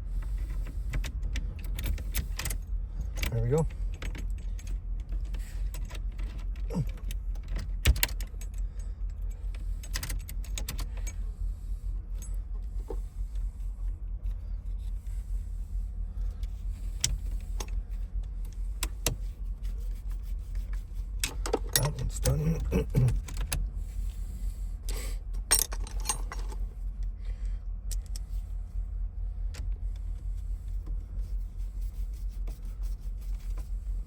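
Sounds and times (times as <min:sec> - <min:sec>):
steady low hum: 0:00.0 - 0:34.0
metal parts clicking and clinking: 0:25.4 - 0:26.7.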